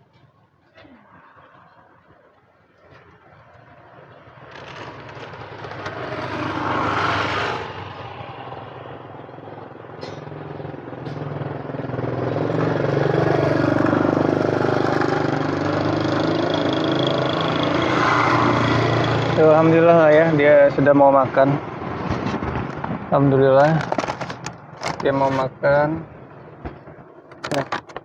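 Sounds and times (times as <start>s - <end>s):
steady engine hum: 1.6s - 28.0s
vehicle passing: 3.1s - 10.0s.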